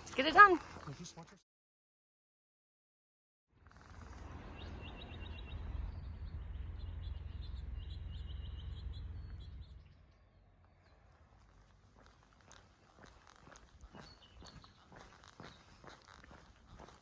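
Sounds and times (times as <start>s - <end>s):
small birds chirping: 3.6s - 17.0s
steady low rumble: 3.7s - 16.8s.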